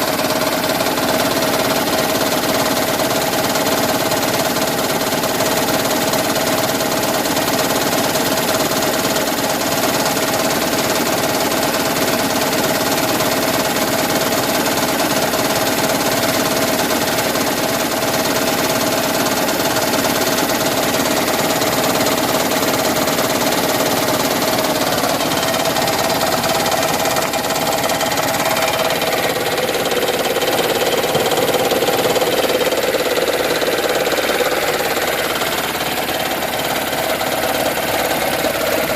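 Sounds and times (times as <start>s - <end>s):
car engine knocking rattle: 0.0s - 38.9s.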